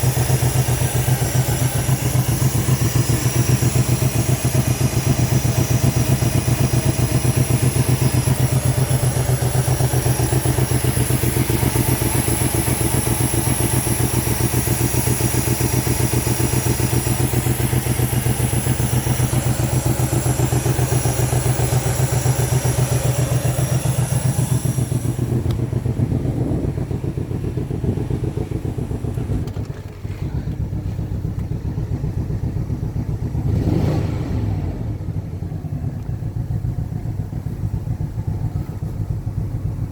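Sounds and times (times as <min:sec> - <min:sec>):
car engine idling: 0:00.0 - 0:39.9.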